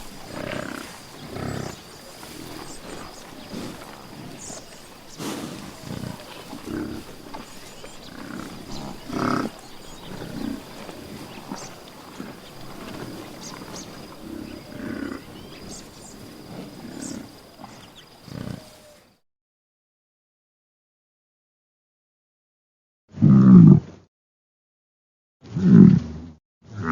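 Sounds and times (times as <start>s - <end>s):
large animal grunting calls: 0.0s - 19.1s.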